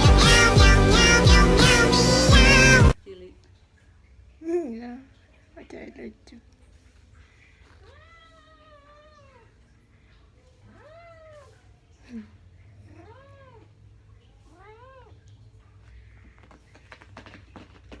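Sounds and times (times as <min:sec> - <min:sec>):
cat meowing: 0:00.2 - 0:03.0, 0:07.8 - 0:09.6, 0:10.7 - 0:11.7.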